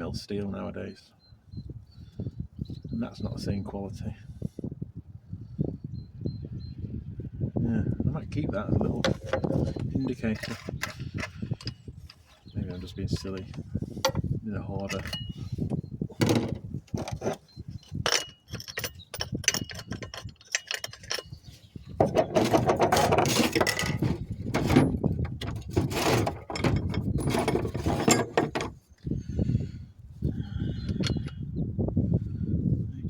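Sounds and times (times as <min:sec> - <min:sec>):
metal tools clicking and clanking: 0:09.0 - 0:15.4, 0:16.2 - 0:28.7, 0:30.9 - 0:31.4.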